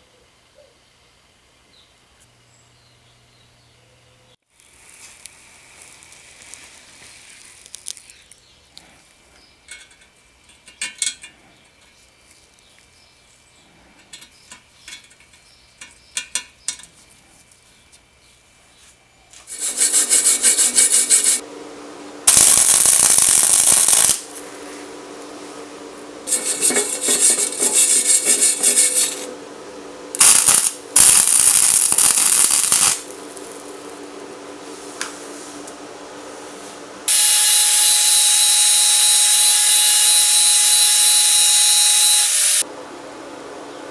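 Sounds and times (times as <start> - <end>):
clinks of parts and tools: 9.7 - 11.9
power tool running: 19.5 - 29.4, 30.0 - 34.3, 37.1 - 42.6
steady hum: 19.5 - 43.9.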